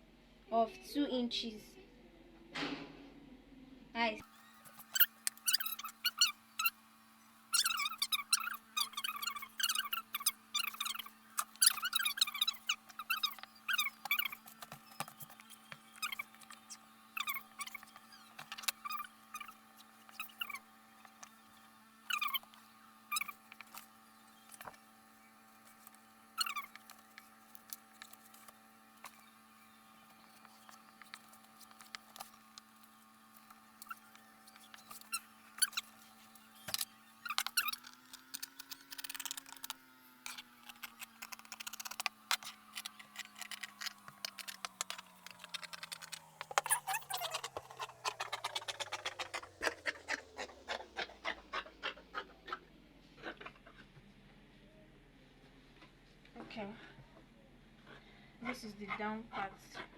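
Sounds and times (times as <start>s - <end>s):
steady low hum: 0.0s - 59.9s
scissors cutting fabric: 36.7s - 51.4s.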